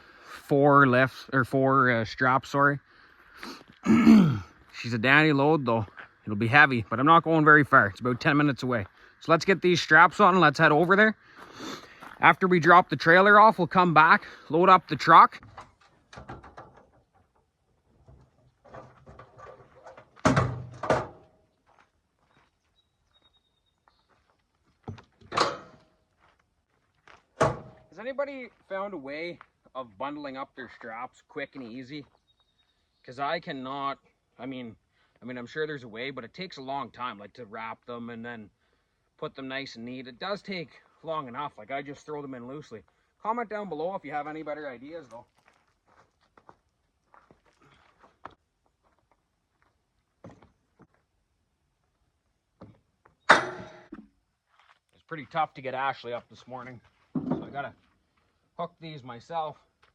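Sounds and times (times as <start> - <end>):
heavy thunks of hard objects: 53.3 - 54.1, 57.2 - 57.6.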